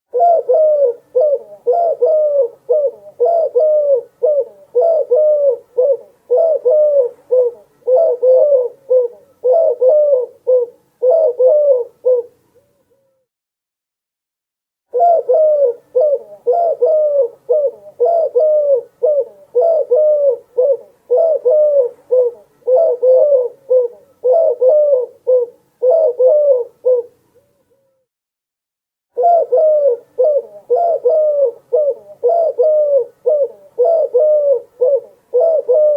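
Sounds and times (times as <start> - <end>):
dove cooing: 0.1 - 13.2, 14.9 - 27.9, 29.2 - 35.9.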